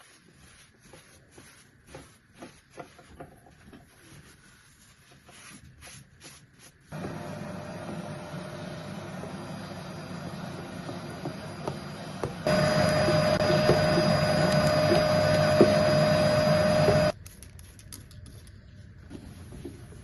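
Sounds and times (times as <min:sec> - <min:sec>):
steady mechanical whir: 0:06.9 - 0:17.2.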